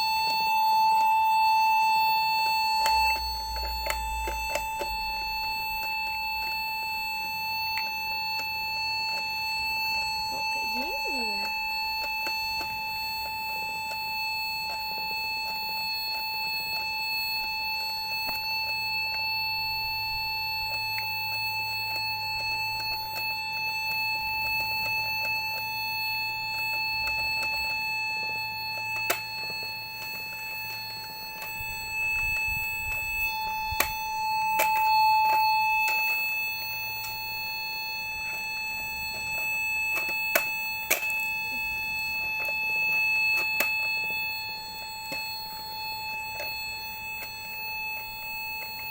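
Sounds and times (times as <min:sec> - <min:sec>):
toy electronic beep tone: 0:00.0 - 0:48.9.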